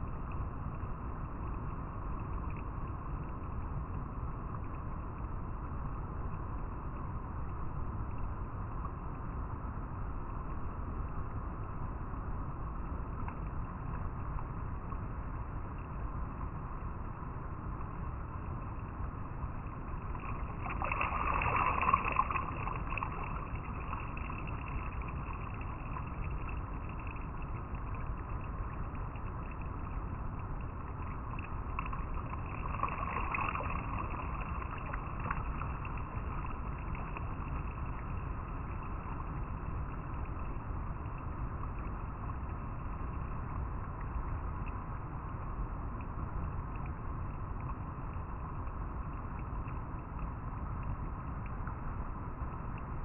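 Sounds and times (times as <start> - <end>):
river water flowing over rocks: 13.4 - 45.4.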